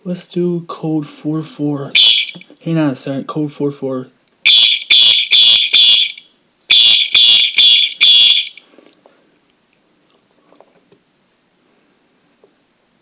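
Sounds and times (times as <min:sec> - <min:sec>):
fire alarm horn blasts: 0:02.0 - 0:02.4, 0:04.5 - 0:08.6.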